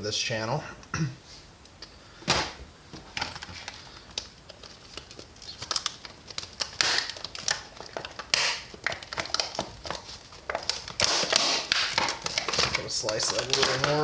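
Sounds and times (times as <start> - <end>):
packaging crinkling: 2.4 - 14.0
packaging tearing: 3.4 - 14.0
knife cutting packaging: 3.7 - 14.0.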